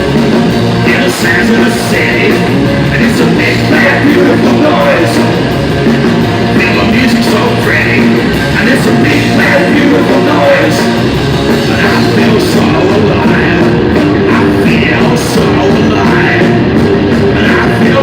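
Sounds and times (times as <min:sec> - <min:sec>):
punk rock band playing live: 0:00.0 - 0:18.0.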